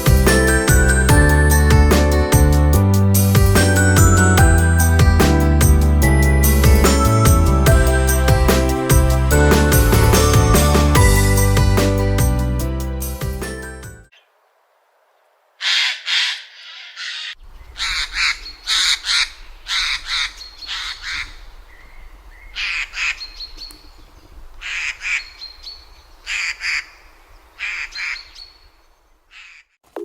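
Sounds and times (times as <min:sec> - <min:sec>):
jay rasping screech calls: 0:15.6 - 0:21.3.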